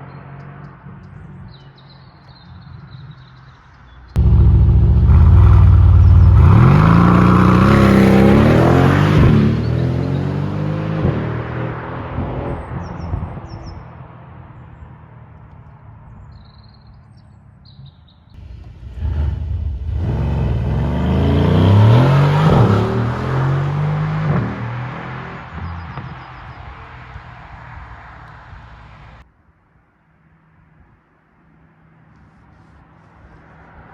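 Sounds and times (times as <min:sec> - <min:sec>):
gear changes: 0:04.2 - 0:08.5, 0:18.4 - 0:23.2
car engine accelerating hard: 0:04.2 - 0:12.6, 0:18.4 - 0:25.8.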